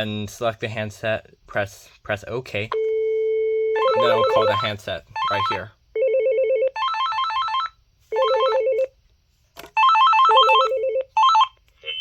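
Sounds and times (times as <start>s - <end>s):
cordless phone warbling ring: 9.8s - 12.0s.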